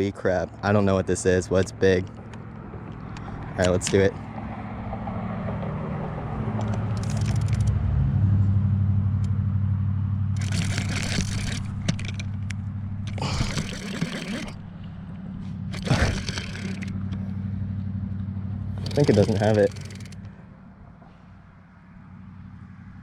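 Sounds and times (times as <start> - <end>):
low engine hum: 0.0 - 23.0.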